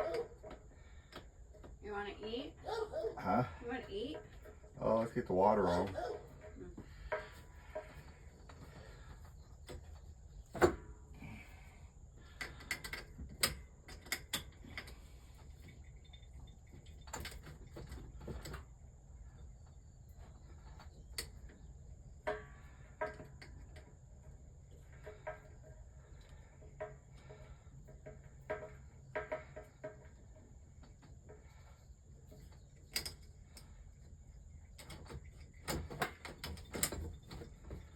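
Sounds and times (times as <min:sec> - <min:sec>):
tools and parts clicking: 0:12.2 - 0:18.8, 0:20.2 - 0:37.9.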